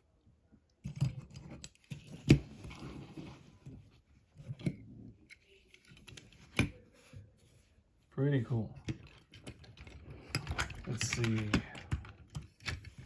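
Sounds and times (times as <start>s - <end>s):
toy cars clicking and knocking: 8.8s - 13.0s.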